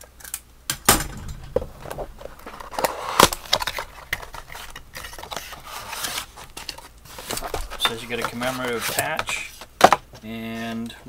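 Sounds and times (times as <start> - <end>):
cardboard packaging tearing: 1.8 - 9.4.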